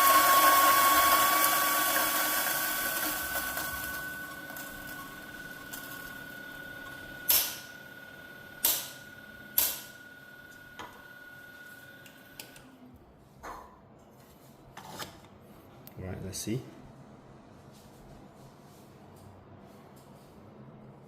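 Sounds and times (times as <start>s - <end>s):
electric coffee grinder whine: 0.0s - 12.7s.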